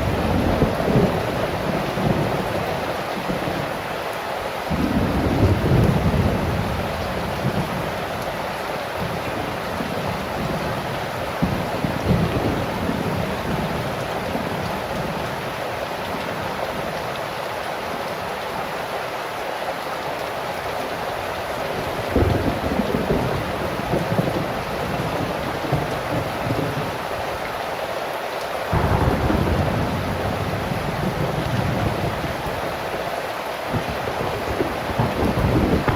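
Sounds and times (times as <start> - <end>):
low rumbles of wind or thunder: 0.0 - 3.4, 4.7 - 8.0, 22.1 - 27.0, 28.7 - 32.7, 33.7 - 35.9
heavy rain falling: 0.0 - 35.9.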